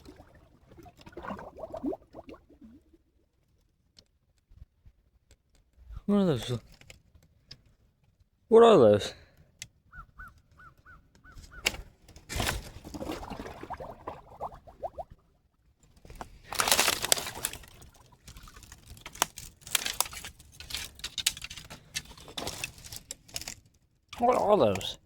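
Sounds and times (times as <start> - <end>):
twigs snapping underfoot: 16.0 - 23.6.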